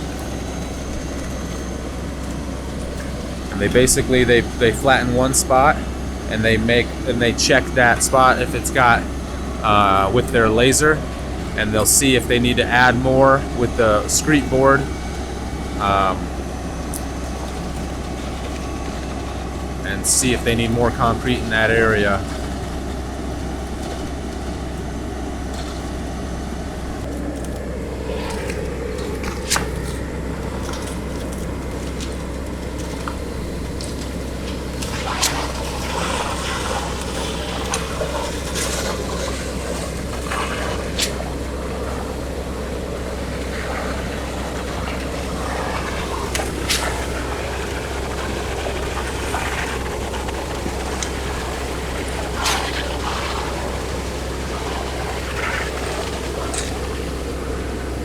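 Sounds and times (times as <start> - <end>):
diesel truck engines running: 0.0 - 58.0.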